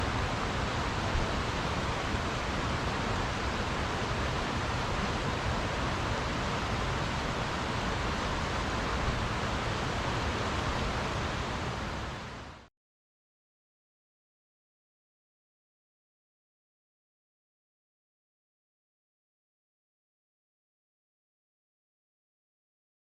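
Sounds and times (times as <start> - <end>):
steady rushing noise: 0.0 - 12.7.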